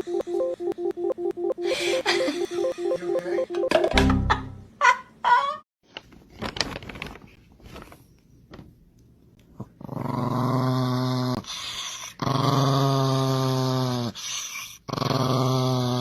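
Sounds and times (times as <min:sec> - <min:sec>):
dog growling: 0:09.6 - 0:16.0.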